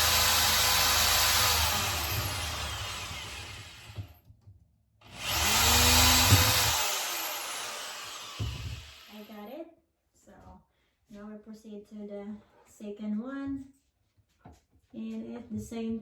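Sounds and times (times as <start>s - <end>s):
electric drill running: 0.0s - 4.1s, 5.1s - 9.2s.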